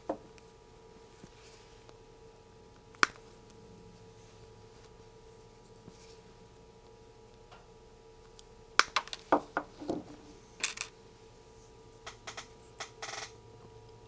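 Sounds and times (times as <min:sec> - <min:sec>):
faint steady hum: 0:00.0 - 0:14.0
components and tools clinking: 0:10.6 - 0:10.9.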